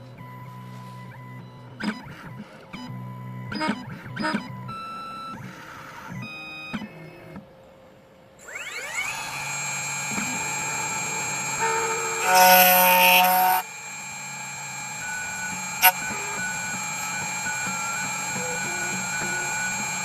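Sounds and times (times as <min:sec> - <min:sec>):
key cutting machine whine: 0:08.4 - 0:20.0.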